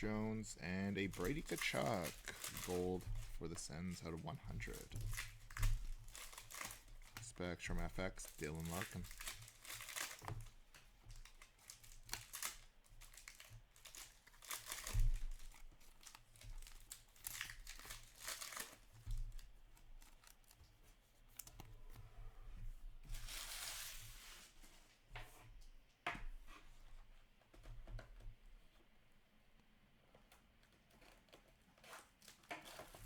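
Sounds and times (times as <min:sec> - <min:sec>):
foil wrappers tearing and crinkling: 0:00.0 - 0:20.6, 0:23.2 - 0:24.6.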